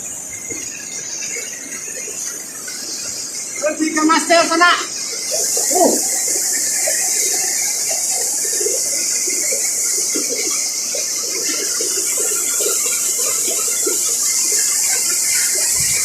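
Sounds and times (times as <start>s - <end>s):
underwater bubbling and gurgling: 5.1s - 16.0s.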